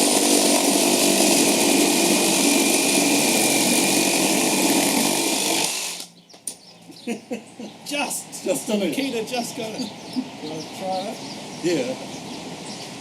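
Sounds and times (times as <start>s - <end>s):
reciprocating saws cutting: 0.0s - 6.1s.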